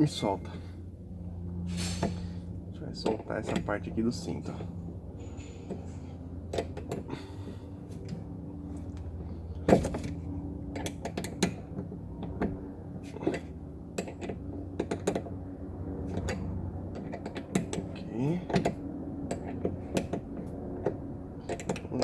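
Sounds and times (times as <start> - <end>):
steady low hum: 0.0 - 22.0
wrench clicking and knocking on bolt: 20.8 - 21.9.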